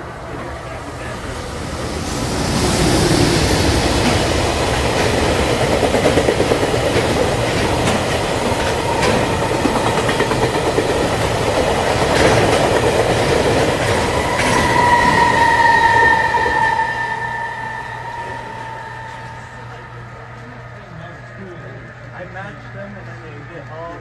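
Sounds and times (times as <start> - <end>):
freight train rumbling: 0.0 - 24.0
wheels clicking over rail joints: 5.0 - 14.6
high-pitched tone: 14.0 - 20.6.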